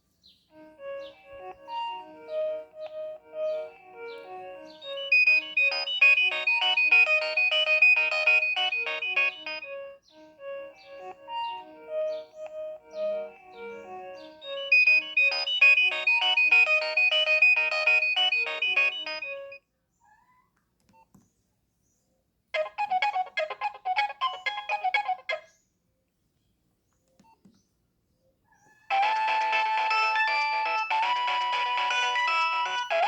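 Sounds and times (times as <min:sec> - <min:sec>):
mobile phone ringtone melody: 0:00.6 - 0:19.6, 0:22.6 - 0:25.5, 0:28.9 - 0:33.0.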